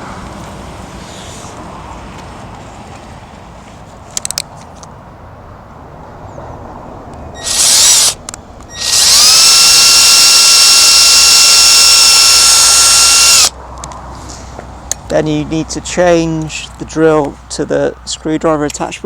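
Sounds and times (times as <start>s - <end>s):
power drill whining into wood: 7.4s - 13.5s.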